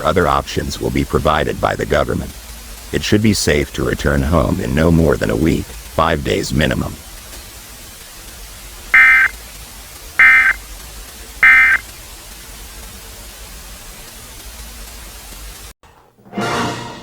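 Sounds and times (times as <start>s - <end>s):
static hiss: 0.0s - 15.8s
buzzy digital warbling bursts: 9.0s - 9.3s, 10.2s - 10.6s, 11.4s - 11.8s.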